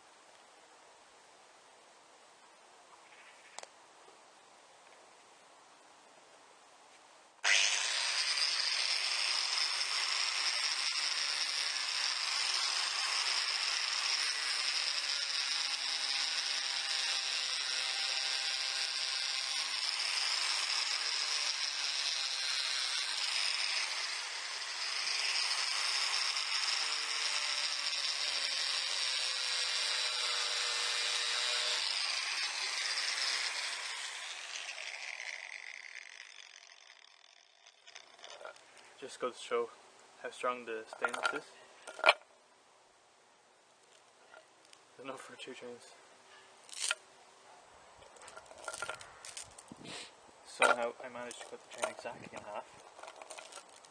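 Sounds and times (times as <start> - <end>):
grinder spinning down: 7.4 - 39.2, 48.1 - 50.0, 50.6 - 53.9
angle grinder cutting steel chain: 7.4 - 39.3, 40.7 - 42.2, 46.7 - 47.0, 48.0 - 53.9.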